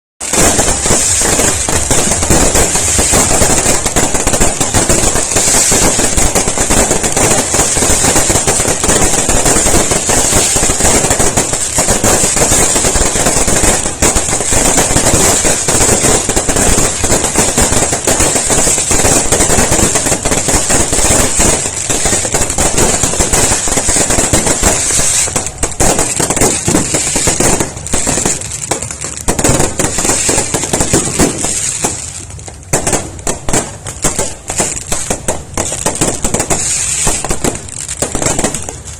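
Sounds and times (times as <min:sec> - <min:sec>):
fireworks crackling and popping: 0:00.2 - 0:38.9.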